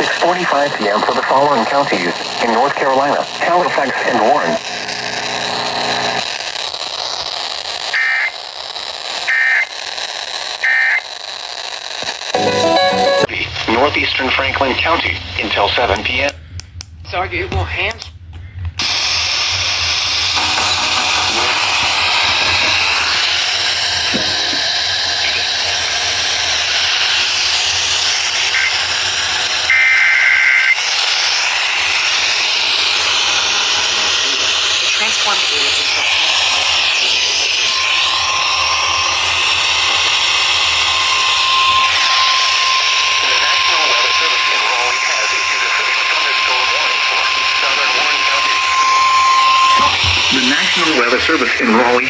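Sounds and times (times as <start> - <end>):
radio static hiss: 0.0 - 8.5, 13.3 - 16.3, 18.8 - 26.3, 28.2 - 31.0, 33.8 - 37.1, 41.5 - 52.0
low buzzing tone: 20.4 - 23.2, 23.9 - 25.9
digital data bursts: 40.1 - 52.0.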